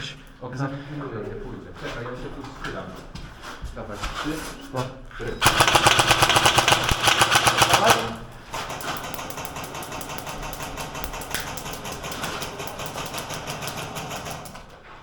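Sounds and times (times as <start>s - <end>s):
airsoft guns firing full auto: 5.4s - 14.8s.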